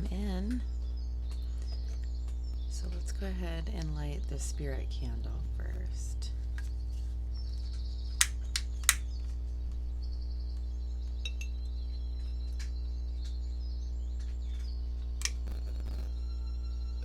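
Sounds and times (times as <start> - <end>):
faint bird chirps: 0.0 - 17.0
steady low drone: 0.0 - 17.0
sharp clicks: 8.2 - 9.1, 15.2 - 16.0.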